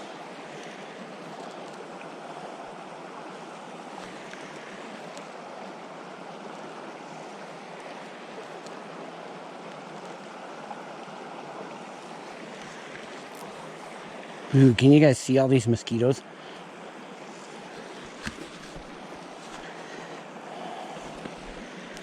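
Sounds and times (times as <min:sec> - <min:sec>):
mountain creek flowing: 0:00.0 - 0:22.0.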